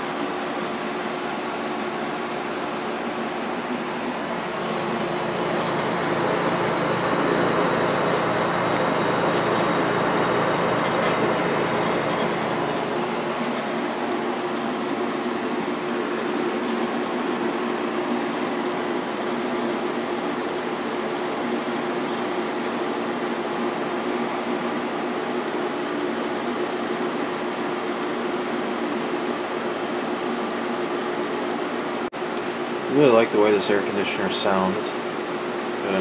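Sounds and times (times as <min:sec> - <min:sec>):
air conditioner compressor humming: 0:00.0 - 0:36.0
air conditioner fan: 0:00.0 - 0:36.0.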